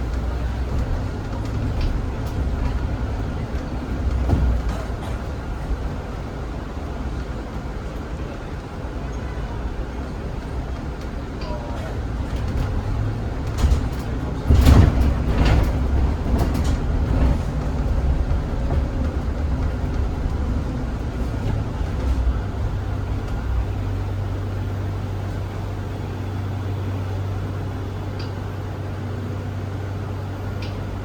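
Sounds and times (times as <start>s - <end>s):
bus interior low rumble: 0.0s - 31.0s
knocks and rattles: 12.2s - 22.5s.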